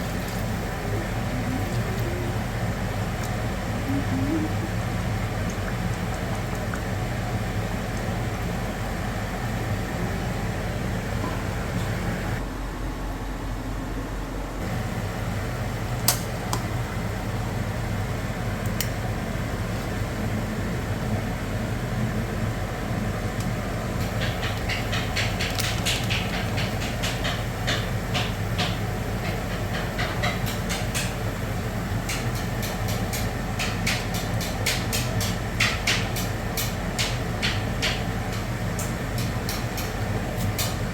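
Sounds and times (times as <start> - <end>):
cooking clicks and clatter: 0.0 - 3.8, 5.1 - 8.8, 23.4 - 40.9
steady low hum: 0.0 - 40.9.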